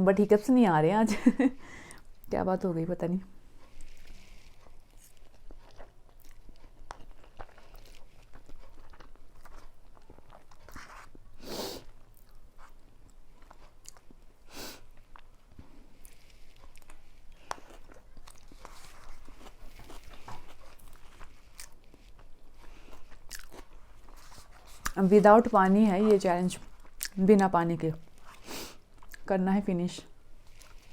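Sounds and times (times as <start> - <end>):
person eating noodles: 15.8 - 25.0.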